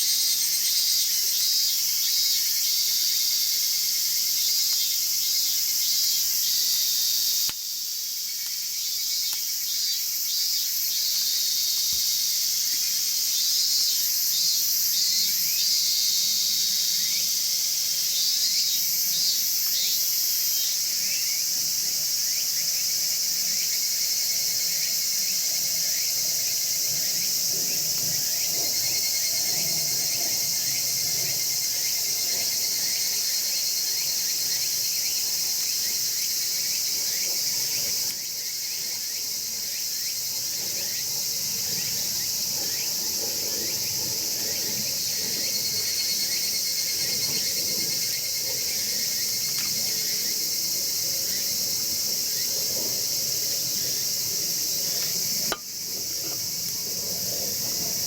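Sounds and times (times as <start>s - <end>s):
crickets and insects chirping: 0.0s - 58.0s
rapid insect chirps: 0.0s - 58.0s.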